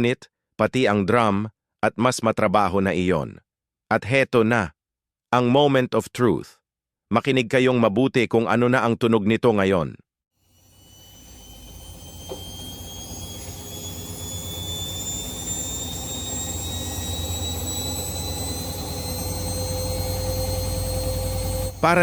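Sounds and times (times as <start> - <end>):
washing machine spinning whine: 10.5 - 22.0.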